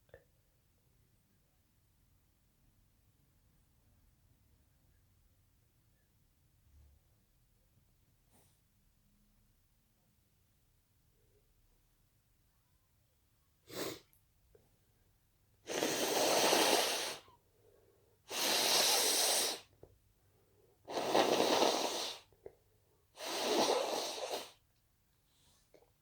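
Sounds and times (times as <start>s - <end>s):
person sneezing: 13.7s - 14.0s
noisy blasts of breath: 15.7s - 17.2s, 18.3s - 19.7s.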